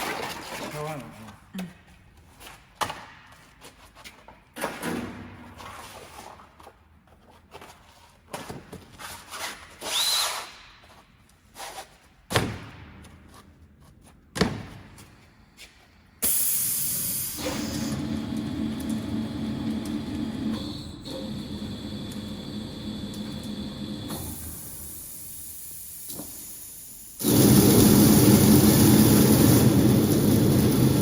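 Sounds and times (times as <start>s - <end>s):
machine humming drone: 27.2s - 31.0s.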